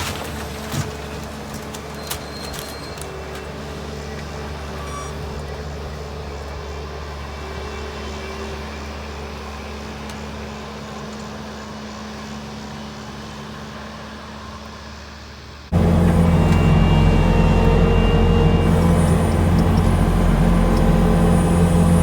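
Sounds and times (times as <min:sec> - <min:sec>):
diesel engine running: 0:15.7 - 0:22.0.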